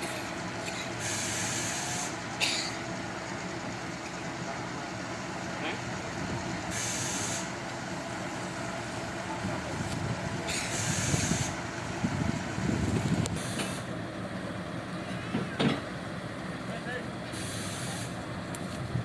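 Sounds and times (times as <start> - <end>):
heavy diesel engines running: 0.0 - 19.0
air hiss bursts: 0.8 - 2.2, 6.7 - 7.6, 10.5 - 11.6, 13.3 - 13.9, 17.3 - 18.2.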